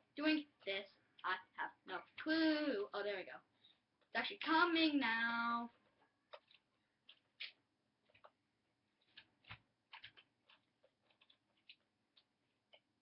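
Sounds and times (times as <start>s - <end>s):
batteries and plastic clicking: 9.0s - 12.9s.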